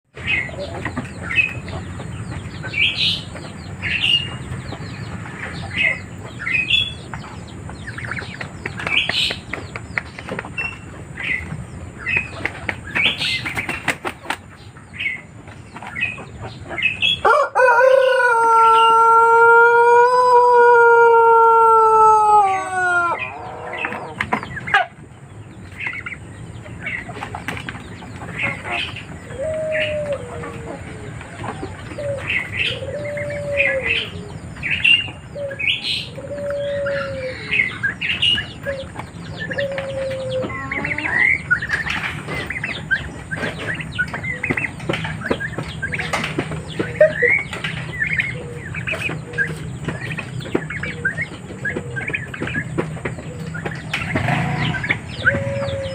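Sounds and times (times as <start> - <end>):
rooster long crow: 17.2 - 23.4.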